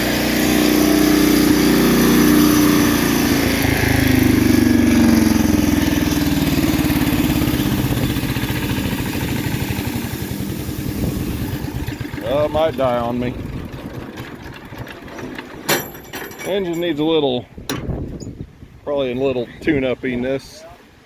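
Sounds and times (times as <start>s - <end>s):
engine running unevenly: 0.0s - 16.6s
person speaking: 12.0s - 13.5s.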